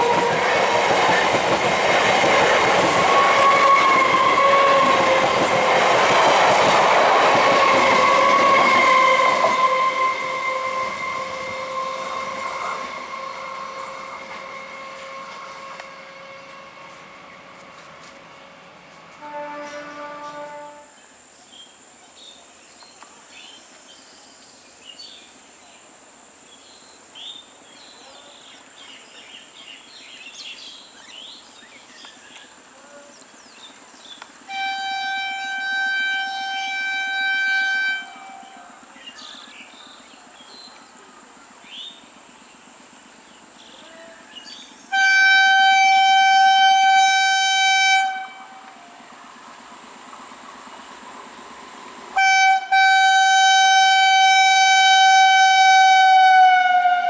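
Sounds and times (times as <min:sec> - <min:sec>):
train horn blasts: 0:00.0 - 0:06.0, 0:07.2 - 0:21.0, 0:34.5 - 0:38.9, 0:44.8 - 0:49.2, 0:52.1 - 0:57.0.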